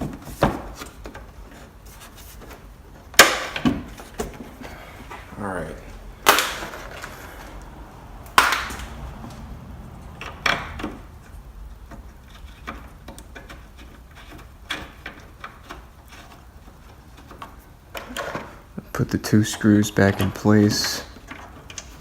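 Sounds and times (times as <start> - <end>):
scraping rattles: 8.3 - 22.0.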